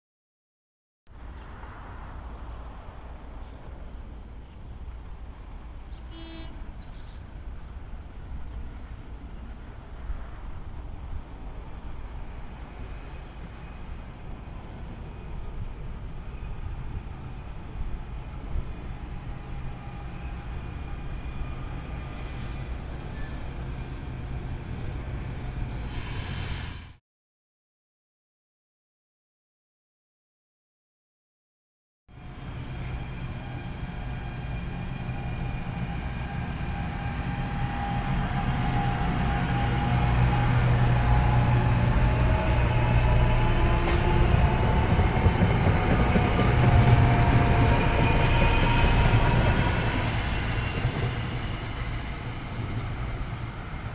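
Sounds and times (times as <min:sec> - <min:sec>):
hiss: 0:25.7 - 0:27.0
train wheels rumbling on rails: 0:32.3 - 0:53.9.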